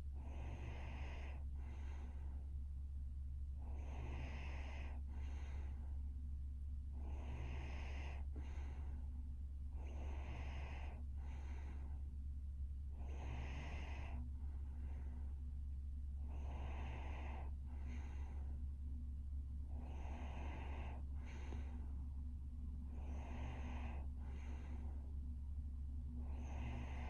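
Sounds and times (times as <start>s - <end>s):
steady low hum: 0.0s - 27.0s
woman snoring: 0.2s - 2.1s, 3.6s - 5.6s, 7.0s - 8.8s, 9.8s - 11.8s, 13.0s - 14.2s, 16.2s - 18.4s, 19.8s - 21.7s, 22.9s - 24.9s, 26.2s - 27.0s.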